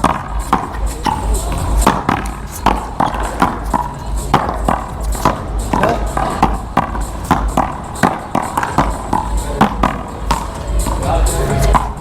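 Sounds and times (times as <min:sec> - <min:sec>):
paddleball hits and bounces: 0:00.0 - 0:11.1.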